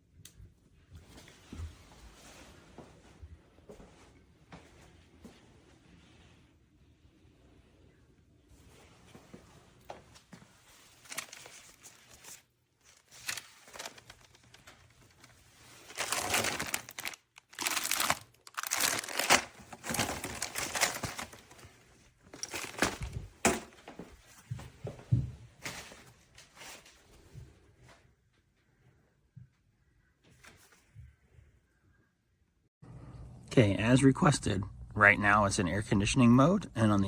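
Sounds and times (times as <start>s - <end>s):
crinkling and crumpling: 8.6s - 28.0s.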